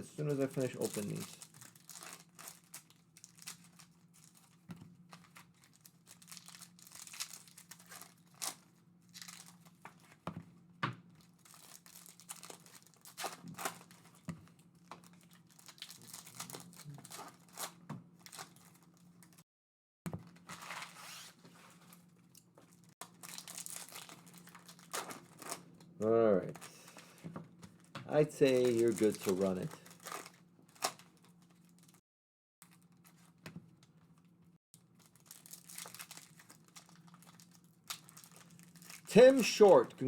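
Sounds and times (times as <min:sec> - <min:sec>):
card packs being torn open: 0:00.0 - 0:10.1, 0:11.2 - 0:14.2, 0:14.8 - 0:19.4, 0:22.7 - 0:25.7, 0:28.1 - 0:32.0, 0:35.0 - 0:40.0
wrappers crinkling: 0:00.0 - 0:10.2, 0:11.2 - 0:19.4, 0:20.3 - 0:25.7, 0:26.5 - 0:32.0, 0:34.8 - 0:40.0.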